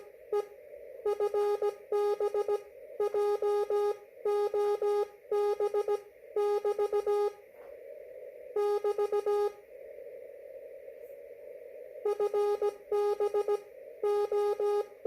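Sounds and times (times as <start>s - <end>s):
morse code tone: 0.0s - 7.4s, 8.6s - 9.6s, 12.1s - 15.0s
radio receiver hiss: 0.0s - 15.0s.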